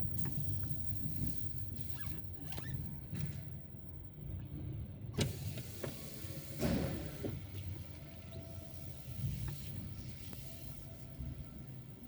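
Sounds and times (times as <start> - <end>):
car engine and tyre hum: 3.0 - 12.0.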